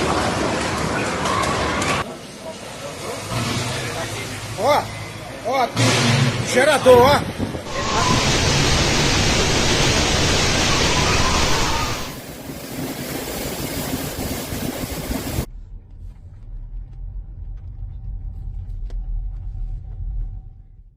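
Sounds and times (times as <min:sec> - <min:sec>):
storm wind on microphone: 0:06.9 - 0:15.8
low engine-like hum: 0:15.5 - 0:20.9.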